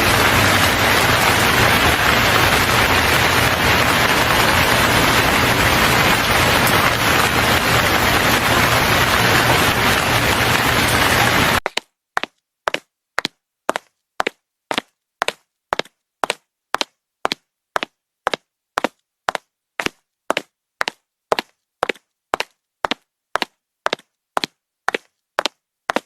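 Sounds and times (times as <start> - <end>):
loud rushing hiss: 0.0 - 11.6.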